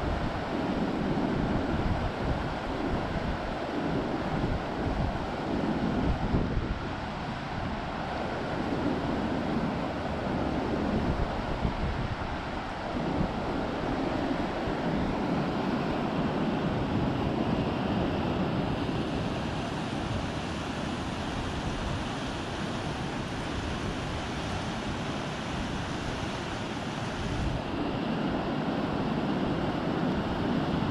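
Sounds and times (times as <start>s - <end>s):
river water rushing: 0.2s - 30.9s.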